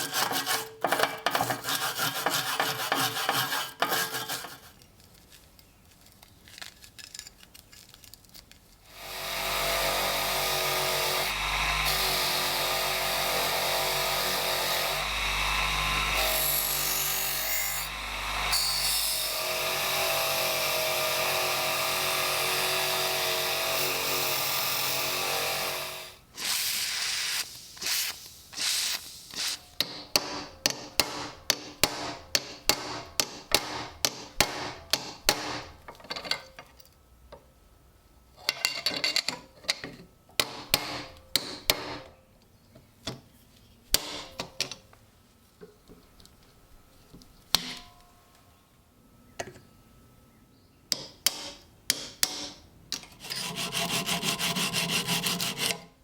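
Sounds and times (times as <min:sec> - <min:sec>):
power tool motor humming: 0:08.9 - 0:27.5.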